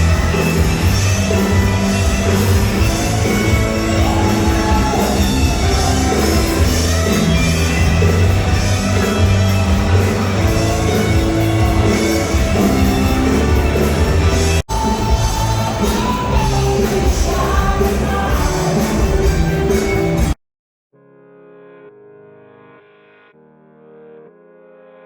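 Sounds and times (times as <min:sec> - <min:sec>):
rock music with electric guitar: 0:00.0 - 0:20.4.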